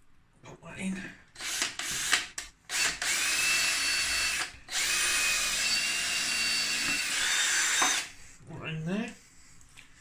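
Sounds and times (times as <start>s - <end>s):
electric drill drilling into wood: 1.4s - 8.1s.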